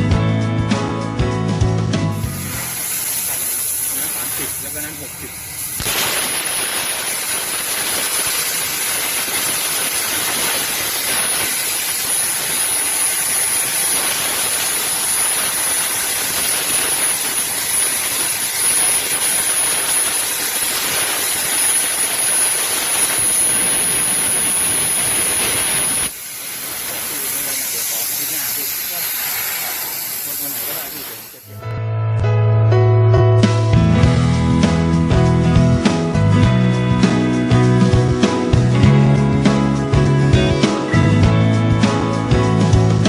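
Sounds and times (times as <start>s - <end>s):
cutting torch hissing: 2.2s - 31.6s.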